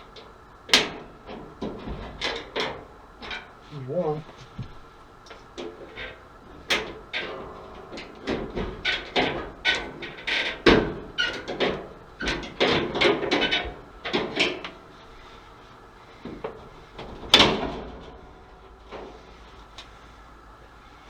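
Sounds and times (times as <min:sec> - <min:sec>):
sheet metal knocks and rattles: 0:00.2 - 0:03.6, 0:05.6 - 0:14.8, 0:16.2 - 0:19.2.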